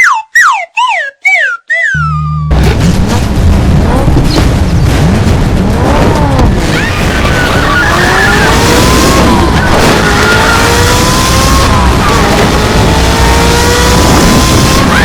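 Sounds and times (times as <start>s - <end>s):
racing car engine accelerating: 2.0s - 15.0s
low rumble: 2.4s - 7.6s.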